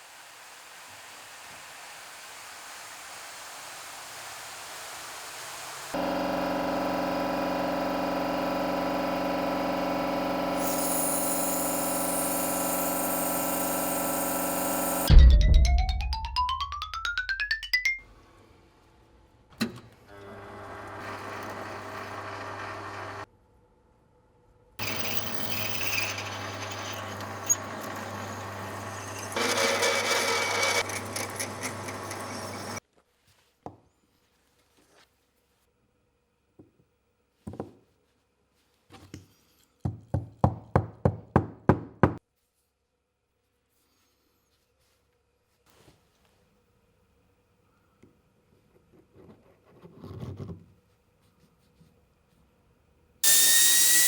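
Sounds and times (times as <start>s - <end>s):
hiss: 0.0s - 6.0s, 10.6s - 15.1s
vacuum pump humming: 5.8s - 15.1s, 20.1s - 23.2s, 24.8s - 32.8s
sudden loud hit: 15.1s - 16.2s.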